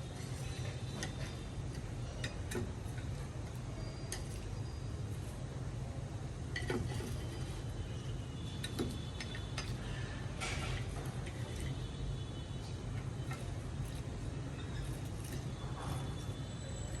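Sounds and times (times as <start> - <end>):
utensils clinking against dishes: 0.0 - 5.4, 8.4 - 11.9, 12.6 - 17.0
steady low hum: 0.0 - 17.0.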